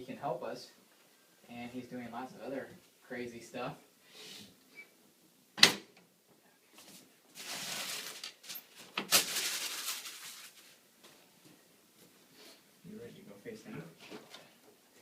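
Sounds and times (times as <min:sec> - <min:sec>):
rustling: 0:06.7 - 0:12.7.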